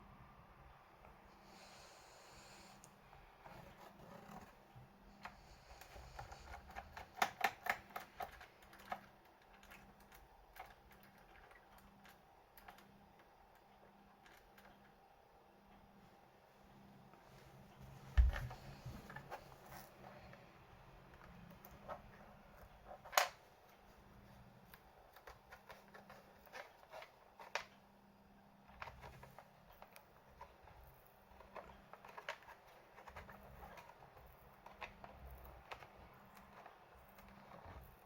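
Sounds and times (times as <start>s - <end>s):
tools clicking on a laptop: 5.2s - 15.0s.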